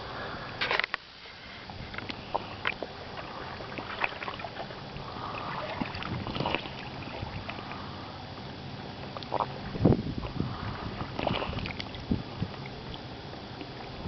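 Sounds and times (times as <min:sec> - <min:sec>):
sea washing around stone: 0:02.2 - 0:07.9.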